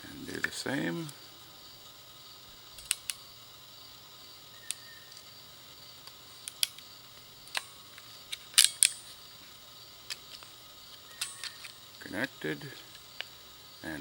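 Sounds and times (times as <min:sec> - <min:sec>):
crimping tool clicks: 0:02.8 - 0:03.2, 0:06.0 - 0:06.9, 0:07.5 - 0:09.2, 0:10.1 - 0:12.1.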